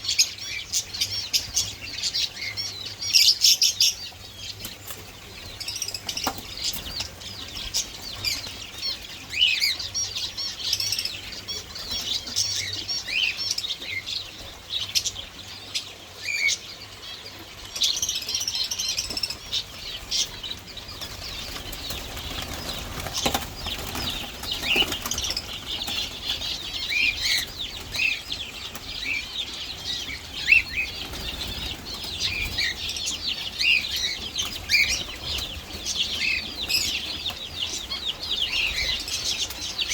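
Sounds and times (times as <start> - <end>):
small birds chirping: 0.0 - 39.9
wings fluttering: 19.0 - 39.9.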